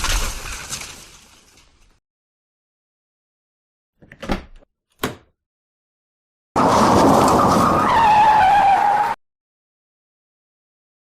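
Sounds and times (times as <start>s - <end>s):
car tyre screech: 6.6s - 9.2s.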